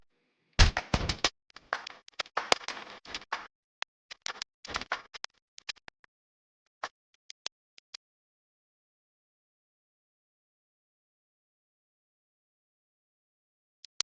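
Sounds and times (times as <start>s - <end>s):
electrical arcing cracks and pops: 0.6s - 3.5s, 4.1s - 5.9s.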